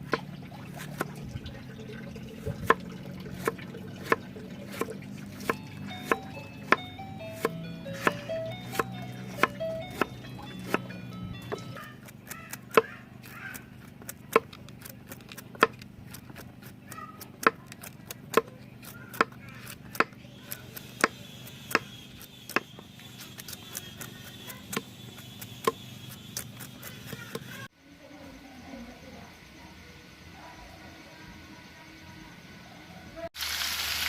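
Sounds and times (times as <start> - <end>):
knife chopping on cutting board: 0.0 - 1.2, 3.4 - 27.6.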